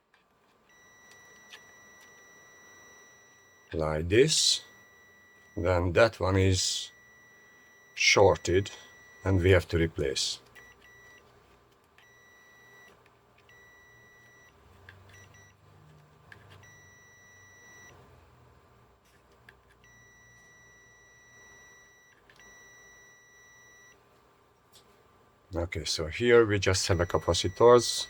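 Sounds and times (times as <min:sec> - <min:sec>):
multimeter beeping: 0:00.7 - 0:11.2, 0:12.0 - 0:15.6, 0:16.3 - 0:18.0, 0:19.7 - 0:24.0, 0:26.1 - 0:28.0.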